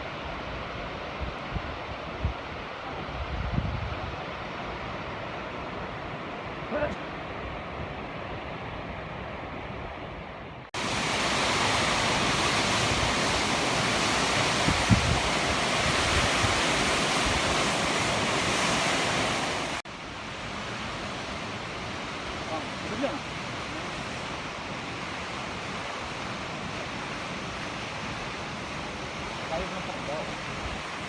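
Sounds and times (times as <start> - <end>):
waterfall rushing: 10.8 - 31.0.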